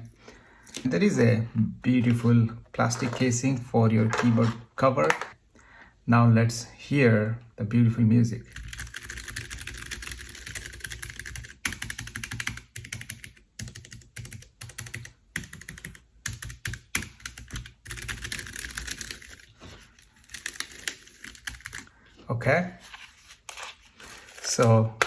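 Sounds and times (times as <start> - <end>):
fast typing on mechanical keyboard: 8.5 - 19.5, 20.2 - 21.9.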